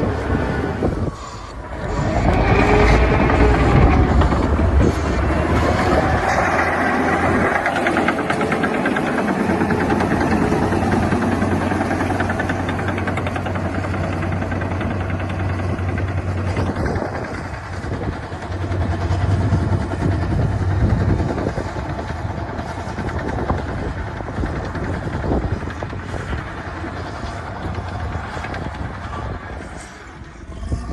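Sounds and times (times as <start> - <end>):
bulldozer diesel engine running: 0.0 - 30.9.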